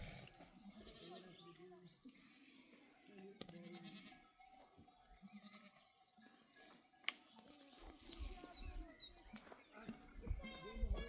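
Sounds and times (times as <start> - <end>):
faint sheep bleating: 0.6 - 1.6, 2.5 - 4.4, 5.2 - 6.0.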